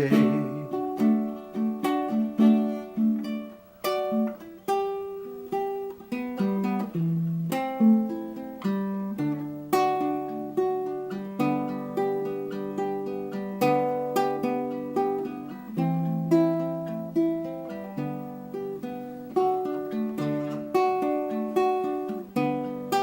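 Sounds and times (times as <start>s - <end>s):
ukulele picked solo: 0.0s - 5.0s.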